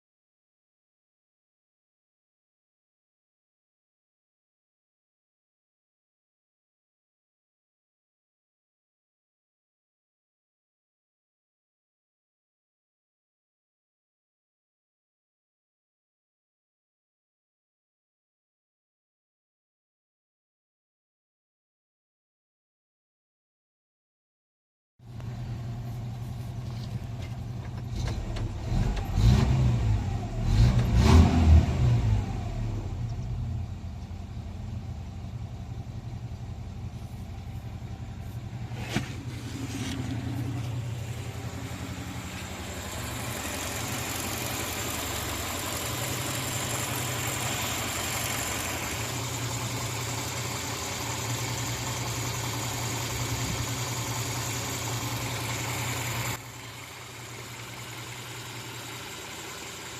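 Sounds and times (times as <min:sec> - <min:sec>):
car engine idling and revving: 0:25.0 - 0:59.9.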